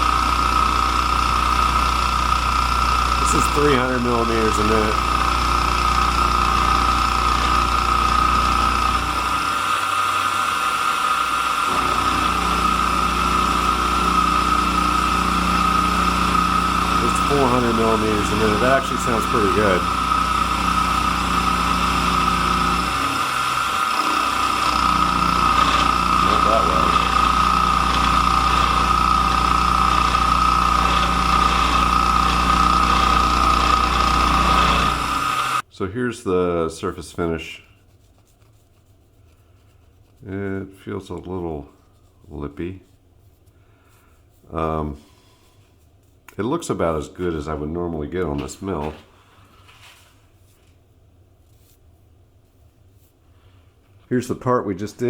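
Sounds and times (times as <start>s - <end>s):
milling machine cutting whine: 0.0s - 35.6s.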